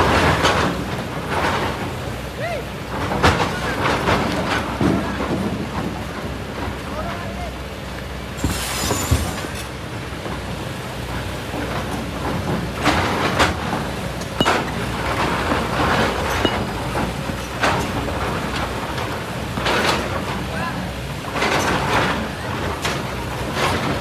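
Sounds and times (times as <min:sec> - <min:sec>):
excavator engine running: 0:09.6 - 0:24.0
bucket clanking on rock: 0:12.4 - 0:20.5.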